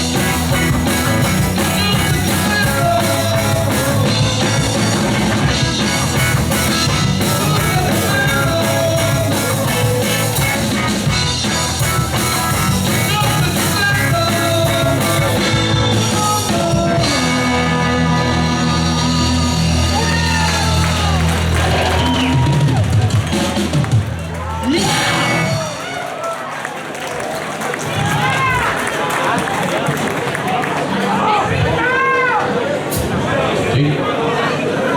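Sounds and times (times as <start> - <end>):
electric guitar: 0.0 - 24.0
drum kit: 0.0 - 25.9
person singing: 1.2 - 5.4, 6.5 - 10.9, 12.3 - 21.3.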